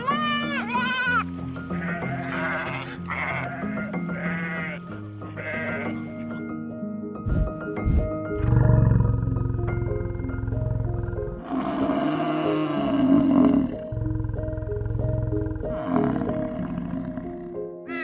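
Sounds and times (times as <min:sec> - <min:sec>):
calm background music: 0:00.0 - 0:18.0
big cat growling and roaring: 0:07.3 - 0:17.6.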